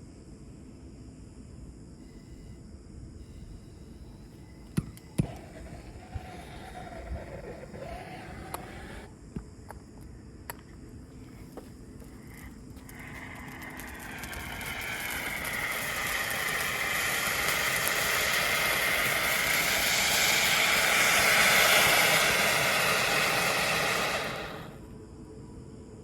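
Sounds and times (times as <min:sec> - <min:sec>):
firework fountain hissing: 0:04.2 - 0:09.1, 0:11.4 - 0:24.9
firework crackling: 0:04.7 - 0:09.1, 0:12.0 - 0:24.9.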